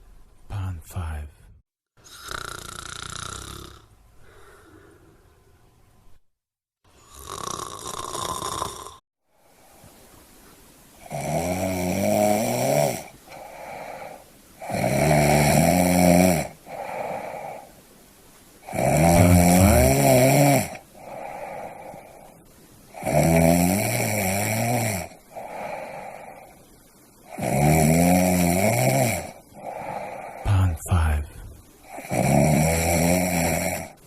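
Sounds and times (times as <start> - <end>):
loud rattling snoring: 2.0 - 3.9, 7.0 - 9.0, 11.0 - 17.7, 18.6 - 22.3, 22.9 - 26.5, 27.3 - 30.4, 31.9 - 34.0.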